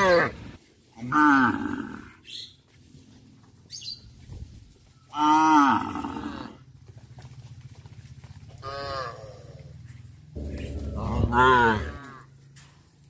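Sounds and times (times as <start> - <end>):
cow mooing: 5.1 - 6.6, 8.6 - 9.8, 10.4 - 12.4.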